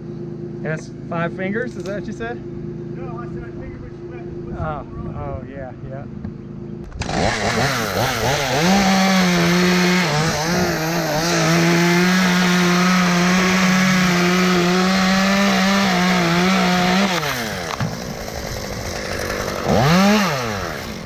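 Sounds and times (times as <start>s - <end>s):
chainsaw cutting wood: 6.8s - 21.0s.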